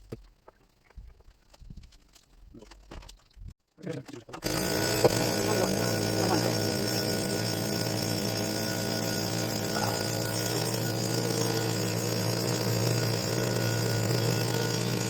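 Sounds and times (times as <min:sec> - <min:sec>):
leaf blower engine running: 0:04.4 - 0:15.0.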